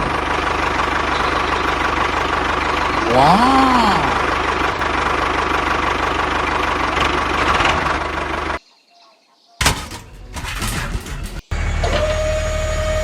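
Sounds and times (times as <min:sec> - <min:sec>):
small engine running: 0:00.0 - 0:08.6
loud clatter: 0:09.6 - 0:11.5.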